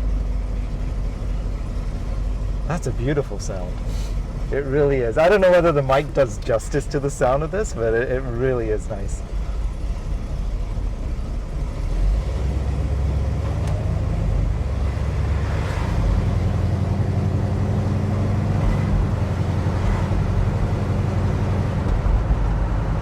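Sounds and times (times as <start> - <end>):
car engine rumbling from inside: 0.0 - 23.0.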